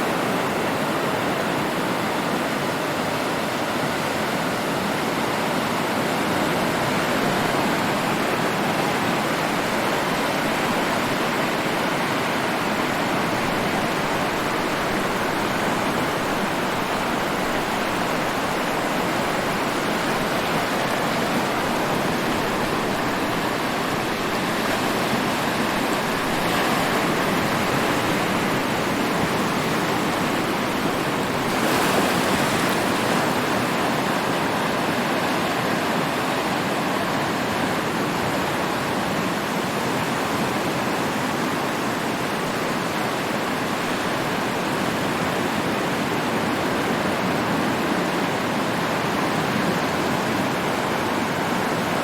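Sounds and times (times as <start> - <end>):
waves breaking: 5.1 - 38.9.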